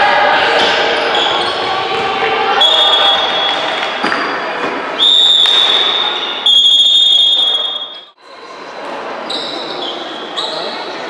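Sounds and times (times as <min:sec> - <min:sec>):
echoing hall noise: 0:00.0 - 0:11.0
referee's whistle blast: 0:02.6 - 0:03.6, 0:05.0 - 0:08.1.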